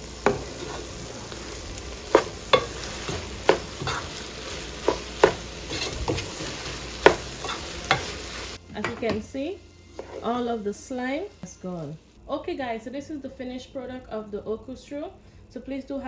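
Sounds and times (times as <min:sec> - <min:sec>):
stew sizzling in a pot: 0:00.0 - 0:16.0
utensil scraping a pot: 0:00.2 - 0:01.1, 0:02.1 - 0:08.3, 0:09.9 - 0:10.4.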